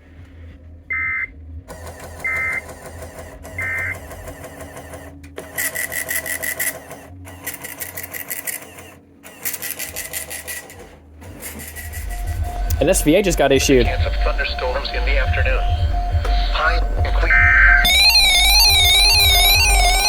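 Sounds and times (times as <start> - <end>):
rhythmic mechanical buzzing: 0.0 - 20.0
data-burst tones: 0.9 - 1.3, 2.1 - 4.4, 12.0 - 20.0
steady high whine: 11.6 - 20.0.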